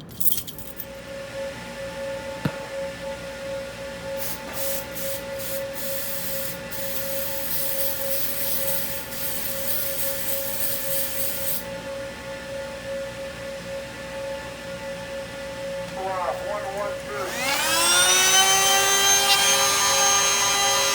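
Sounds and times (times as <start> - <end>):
fire alarm steady tone: 15.9 - 20.9.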